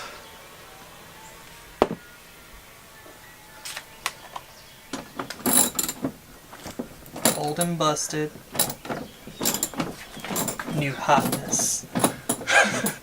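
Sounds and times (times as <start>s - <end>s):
scraping rattle: 5.0s - 13.0s.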